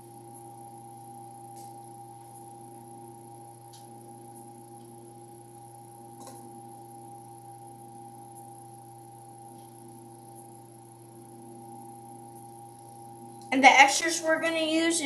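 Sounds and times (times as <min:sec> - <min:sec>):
steady electrical hum: 0:00.0 - 0:15.0.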